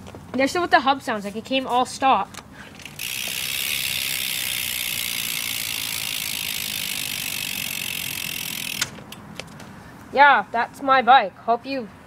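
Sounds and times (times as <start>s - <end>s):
bicycle hub freewheel clicking: 2.8s - 9.0s.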